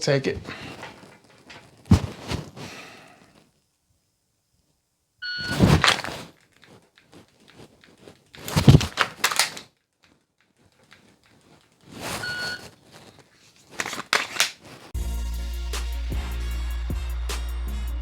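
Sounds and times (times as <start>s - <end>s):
pistol handling clatter and clicks: 5.8s - 11.8s, 13.8s - 14.6s
electronic timer beep: 12.2s - 12.6s.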